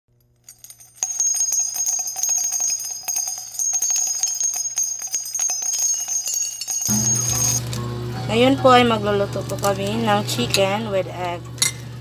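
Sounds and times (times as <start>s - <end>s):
small bells jingling: 0.2s - 8.0s.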